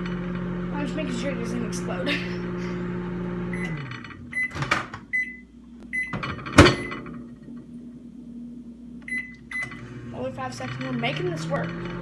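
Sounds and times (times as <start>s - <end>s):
microwave hum: 0.0s - 12.0s
microwave beeps: 2.4s - 7.4s, 9.0s - 10.1s
microwave clunk: 3.3s - 5.3s, 5.9s - 7.7s.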